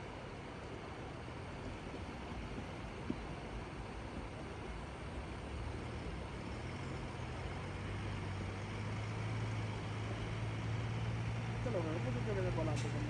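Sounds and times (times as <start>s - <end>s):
low engine drone: 0.0s - 13.0s.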